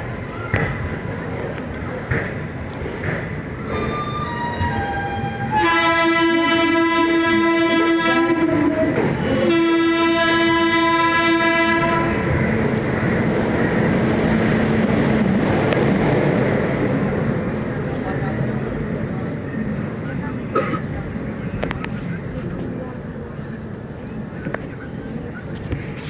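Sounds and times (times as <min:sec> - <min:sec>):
train running rumble: 0:00.0 - 0:26.0
locomotive horn blasts: 0:05.2 - 0:12.3.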